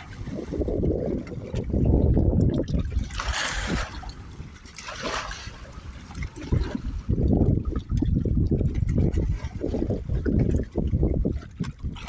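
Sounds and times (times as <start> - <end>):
water splashing and trickling: 0.0 - 12.0
wind rumble on microphone: 0.0 - 12.0.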